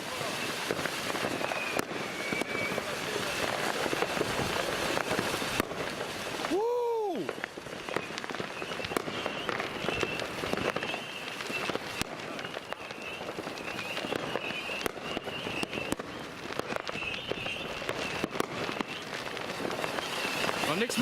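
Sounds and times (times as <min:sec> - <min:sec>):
fireworks and firecrackers crackling: 0:00.0 - 0:21.0
faint wavering whistle: 0:01.3 - 0:02.9, 0:07.9 - 0:19.0.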